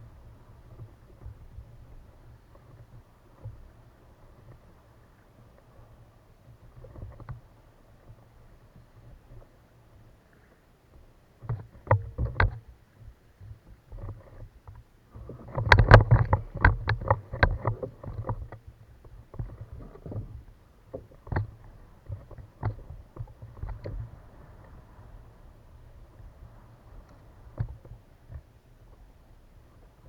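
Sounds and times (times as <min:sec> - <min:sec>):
knocks and thumps on kayak: 0:11.4 - 0:24.9, 0:27.3 - 0:29.1.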